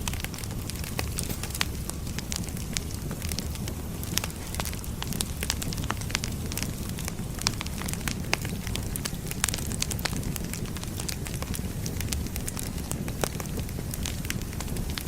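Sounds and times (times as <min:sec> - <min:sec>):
flames rushing: 0:00.0 - 0:11.1
logs crackling and popping: 0:00.0 - 0:15.0.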